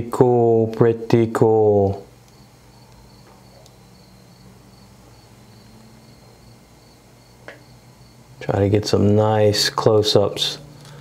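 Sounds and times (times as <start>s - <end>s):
steady low hum: 0.0s - 11.0s
faint high-pitched pulsing chirp: 2.2s - 8.3s.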